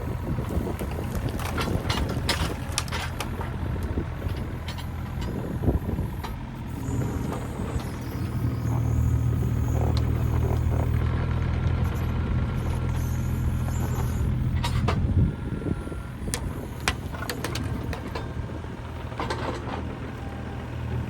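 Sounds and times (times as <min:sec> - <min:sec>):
engine running: 0:00.0 - 0:21.0
clicks and knocks of work: 0:00.8 - 0:05.4, 0:16.3 - 0:18.4.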